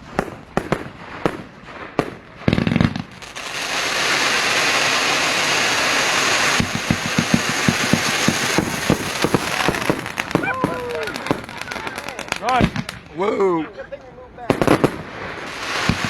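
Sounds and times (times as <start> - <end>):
firework bangs: 0.0 - 13.3, 14.4 - 16.0
firework hiss: 1.0 - 13.2, 14.5 - 16.0
firework pops: 6.1 - 13.2, 14.5 - 16.0.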